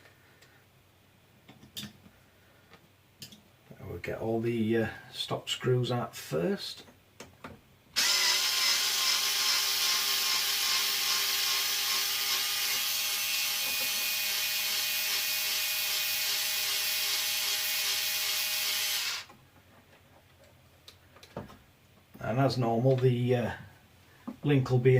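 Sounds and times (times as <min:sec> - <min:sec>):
electric screwdriver running: 0:08.0 - 0:19.3.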